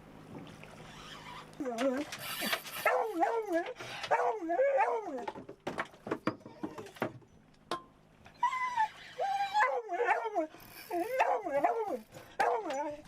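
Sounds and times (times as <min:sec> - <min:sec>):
dog whining and yelping: 0:01.1 - 0:05.3, 0:08.3 - 0:13.0.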